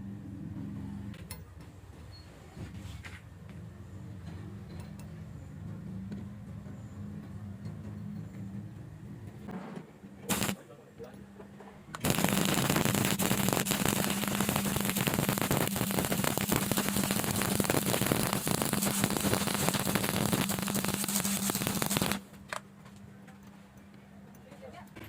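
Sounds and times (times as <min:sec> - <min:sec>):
welding arc crackling: 0:10.3 - 0:10.6, 0:12.0 - 0:22.3.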